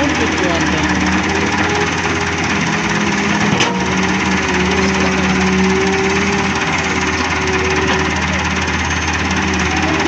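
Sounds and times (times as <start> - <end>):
heavy diesel engines running: 0.0 - 10.0.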